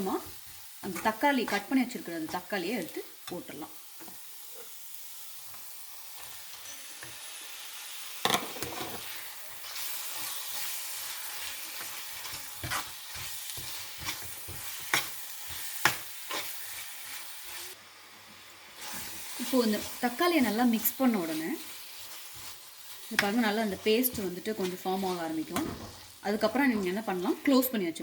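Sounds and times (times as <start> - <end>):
spices sizzling in hot oil: 0.0 - 28.0
spoon scraping and knocking pan: 8.2 - 17.6, 21.1 - 26.1.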